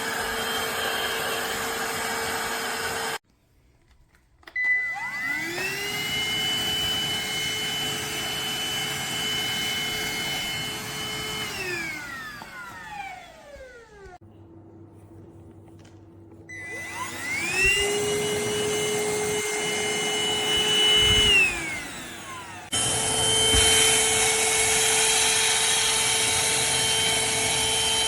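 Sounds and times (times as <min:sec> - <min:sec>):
handheld vacuum cleaner motor whine: 0:00.0 - 0:03.2, 0:04.4 - 0:14.2, 0:16.5 - 0:28.0.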